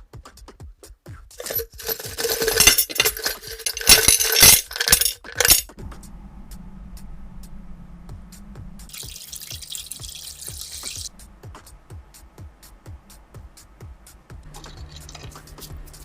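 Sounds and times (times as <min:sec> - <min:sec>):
small hard pieces clinking: 0:01.4 - 0:05.7
steady low hum: 0:01.5 - 0:09.0, 0:11.1 - 0:14.6.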